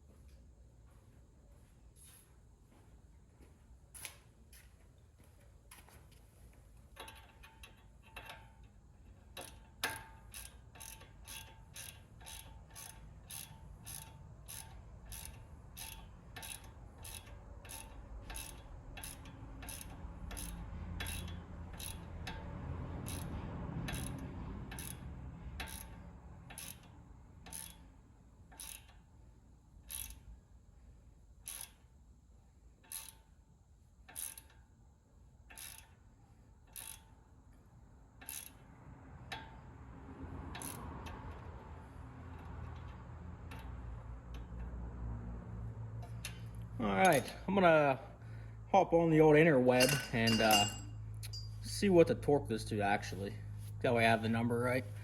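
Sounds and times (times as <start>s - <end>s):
socket ratchet clicking: 7.0s - 22.4s, 23.0s - 25.0s, 25.6s - 27.9s, 28.5s - 29.0s, 29.8s - 30.3s, 31.4s - 31.9s, 32.8s - 33.3s, 34.0s - 34.6s, 35.5s - 36.0s, 36.7s - 37.1s, 38.2s - 38.6s, 40.5s - 41.6s.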